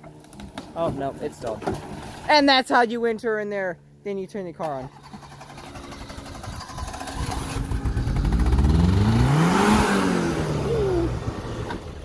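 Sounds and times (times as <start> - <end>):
car engine revving: 5.2 - 12.0.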